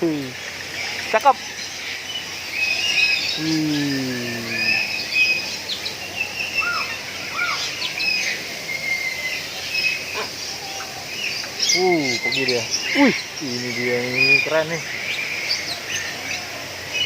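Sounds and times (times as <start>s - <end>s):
birds chirping and whistling: 0.0s - 17.0s
person's long falling voice: 3.4s - 4.9s.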